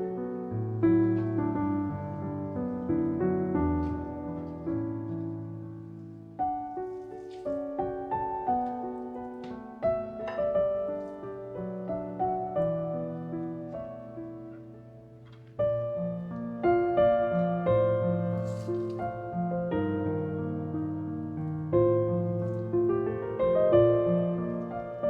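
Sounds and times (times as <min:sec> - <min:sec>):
gentle piano melody: 0:00.0 - 0:25.0.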